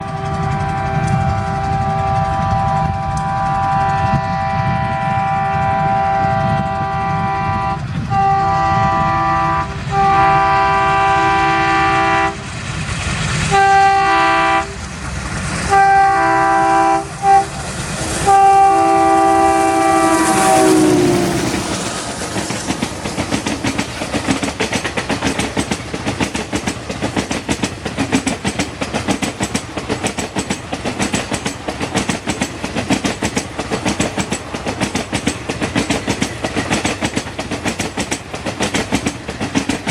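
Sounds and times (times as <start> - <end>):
train horn blasts: 0.0 - 12.5, 13.5 - 14.8, 15.7 - 21.9
train wheels clickety-clack: 0.0 - 39.9.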